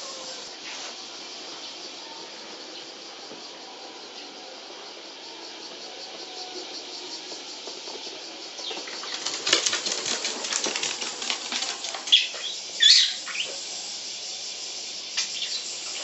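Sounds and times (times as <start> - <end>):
parrot wings fluttering: 8.8 - 13.5.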